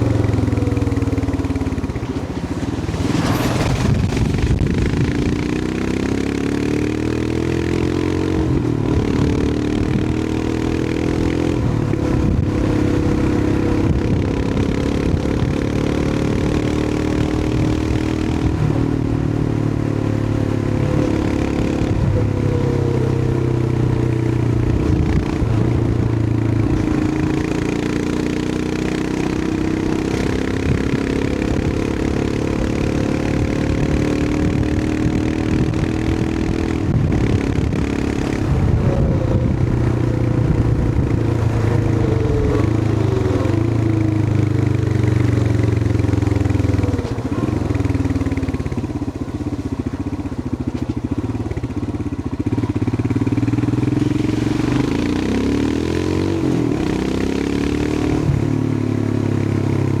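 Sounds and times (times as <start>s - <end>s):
motorcycle engine accelerating: 0.0s - 60.0s.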